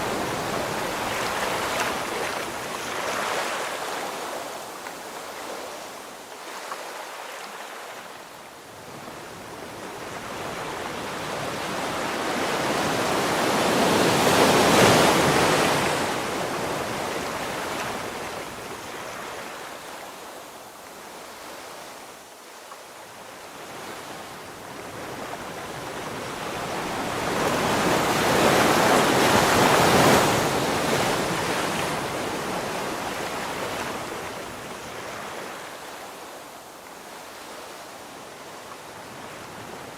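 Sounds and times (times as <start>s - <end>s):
ocean waves breaking: 0.0s - 8.1s, 25.3s - 36.2s.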